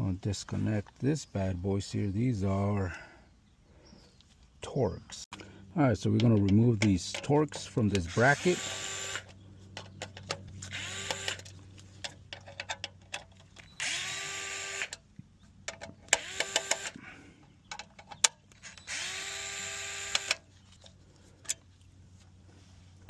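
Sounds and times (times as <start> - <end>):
cordless power driver running: 7.9 - 9.4, 10.6 - 11.6, 13.7 - 15.0, 16.1 - 17.1, 18.6 - 20.5
clicks of parts being handled: 9.7 - 13.7, 15.6 - 17.0, 17.7 - 18.9.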